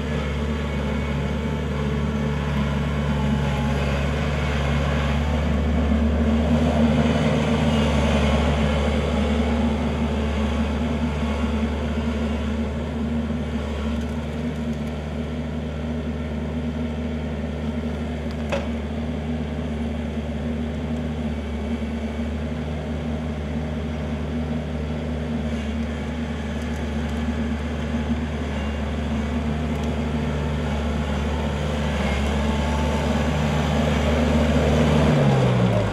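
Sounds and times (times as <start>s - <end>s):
tractor diesel engine running: 0.0s - 35.9s.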